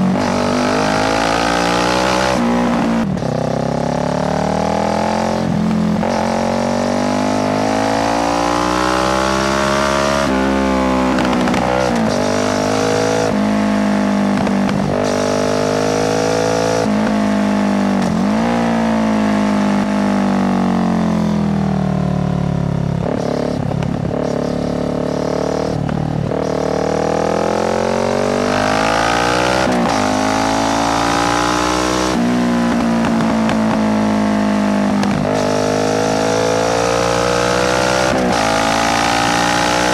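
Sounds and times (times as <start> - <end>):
motorcycle engine revving through gears: 0.0 - 39.9.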